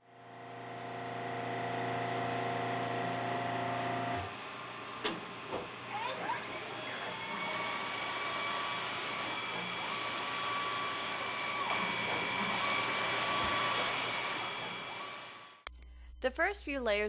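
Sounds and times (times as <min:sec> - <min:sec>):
printer airy hiss with high whine: 0:04.2 - 0:15.6.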